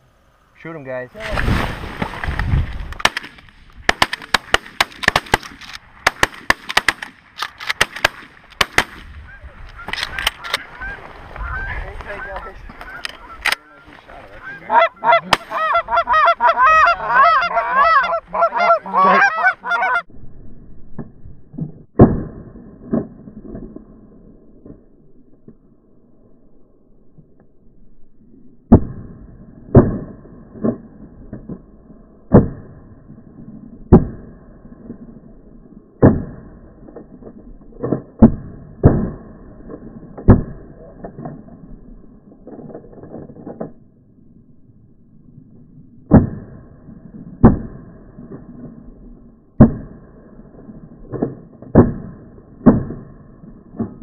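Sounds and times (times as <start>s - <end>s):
shotgun blasts: 3.0s - 9.2s, 15.2s - 15.6s
geese honking: 9.3s - 20.1s.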